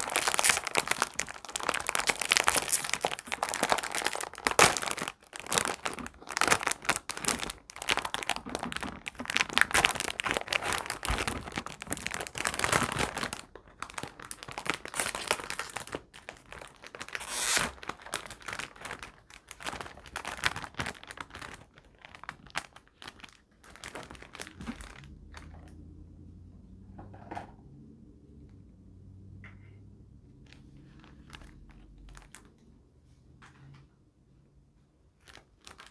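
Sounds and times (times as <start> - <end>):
plastic packaging crinkling and tearing: 0.0 - 25.8, 30.5 - 32.6, 35.2 - 35.9.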